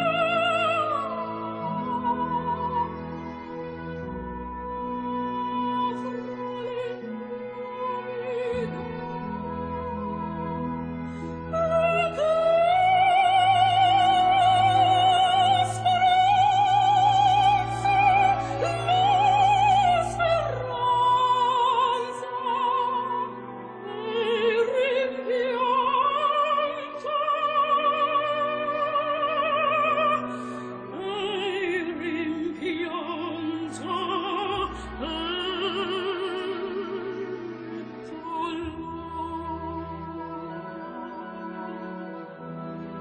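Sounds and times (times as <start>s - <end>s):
operatic singing with vibrato: 0.0s - 43.0s.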